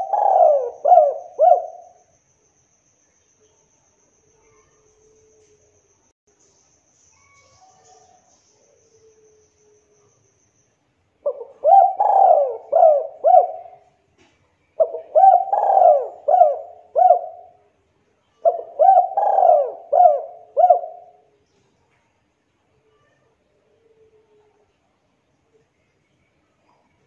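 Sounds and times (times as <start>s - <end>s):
dove cooing: 0.0s - 2.0s, 11.2s - 13.9s, 14.8s - 17.6s, 18.4s - 21.2s.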